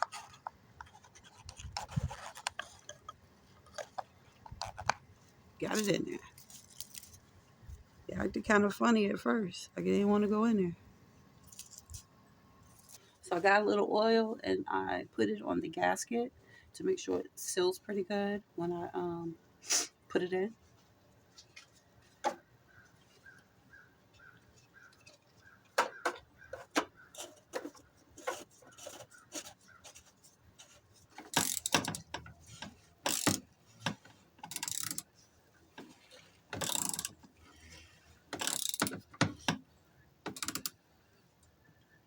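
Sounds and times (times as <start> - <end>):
hand ratchet clicking: 31.2 - 35.1, 36.6 - 37.2, 38.3 - 39.2, 40.3 - 40.7.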